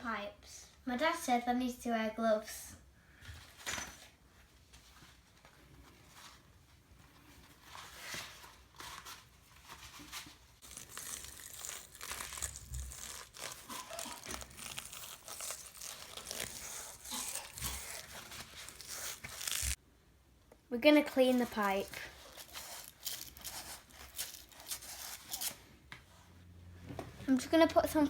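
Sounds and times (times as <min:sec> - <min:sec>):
gloves crinkling and rubbing: 0:04.4 - 0:19.8, 0:21.0 - 0:26.1.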